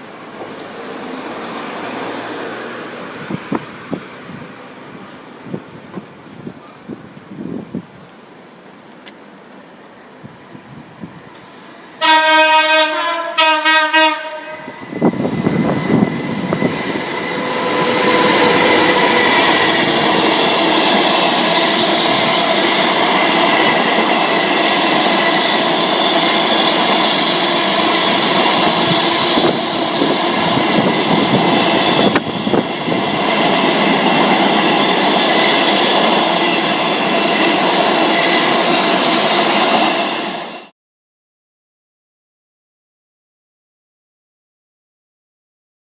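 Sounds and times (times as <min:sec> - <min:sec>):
train rumbling past: 0:00.0 - 0:40.7
train horn blasts: 0:12.0 - 0:15.0
wheels clattering on rails: 0:15.6 - 0:40.0.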